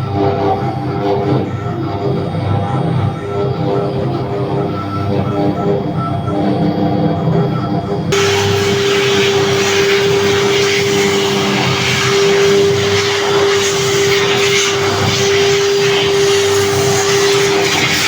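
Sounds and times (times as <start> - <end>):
wood router spindle whining: 8.1 - 18.0.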